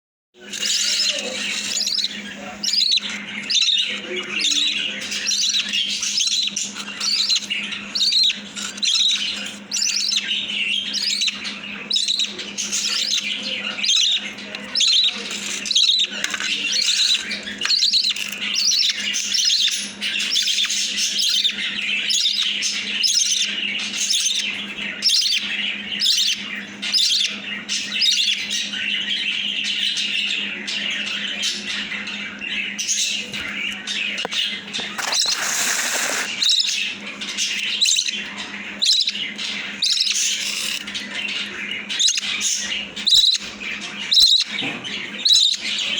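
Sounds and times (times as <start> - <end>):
budgerigar chick begging calls: 0.5 - 3.9, 41.9 - 44.6.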